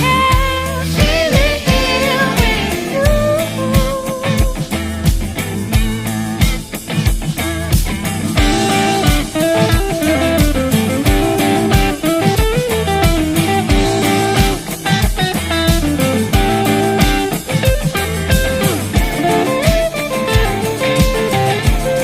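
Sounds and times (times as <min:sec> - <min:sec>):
bluesy guitar song with drums: 0:00.0 - 0:22.0.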